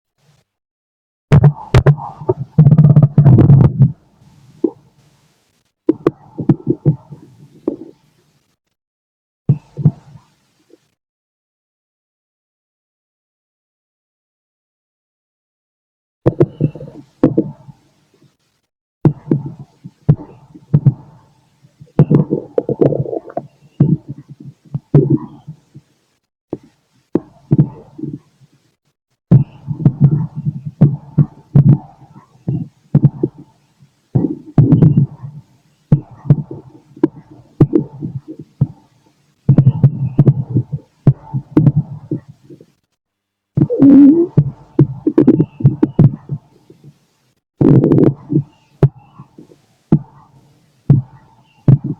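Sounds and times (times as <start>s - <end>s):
heartbeat thumps through stethoscope: 1.3s - 4.8s, 5.9s - 7.9s, 16.3s - 17.7s, 19.0s - 25.9s, 26.5s - 28.2s, 29.3s - 33.5s, 34.2s - 38.9s, 39.5s - 42.6s, 43.6s - 47.0s, 47.6s - 50.2s, 50.9s - 51.9s
stomach gurgling: 1.3s - 4.9s, 5.9s - 8.3s, 16.3s - 17.9s, 19.1s - 26.0s, 26.6s - 28.5s, 29.3s - 33.6s, 34.2s - 42.8s, 43.6s - 47.0s, 47.6s - 51.9s.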